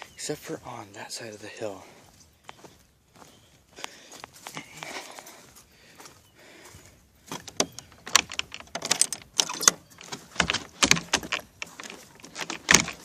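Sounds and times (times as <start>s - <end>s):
hard objects clattering and rattling: 7.4s - 13.0s.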